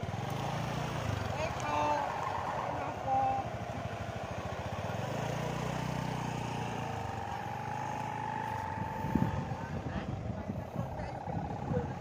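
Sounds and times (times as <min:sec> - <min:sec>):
kite humming bows droning: 0:07.0 - 0:12.0.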